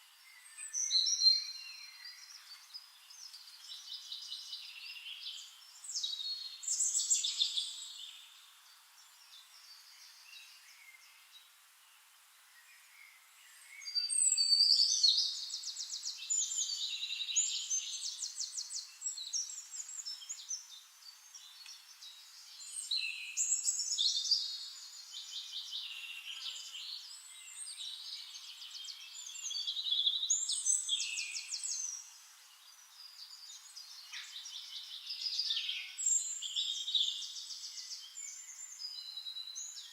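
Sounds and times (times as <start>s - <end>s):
songbird trilling and chirping: 0.3s - 11.2s, 13.7s - 39.9s.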